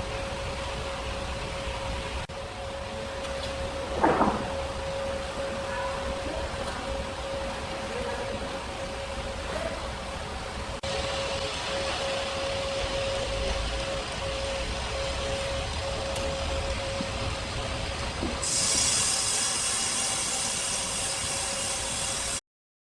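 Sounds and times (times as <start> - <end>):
sawmill machinery hum: 0.0 - 22.4
bright hiss: 18.4 - 22.4.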